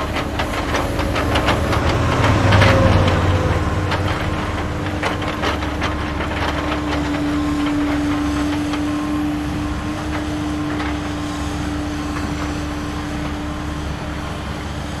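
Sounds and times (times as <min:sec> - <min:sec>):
low rumble: 0:00.0 - 0:07.6.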